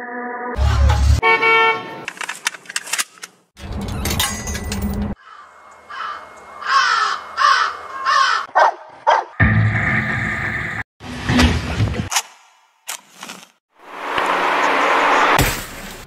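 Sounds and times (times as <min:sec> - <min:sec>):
harsh cawing calls: 0:05.2 - 0:08.6.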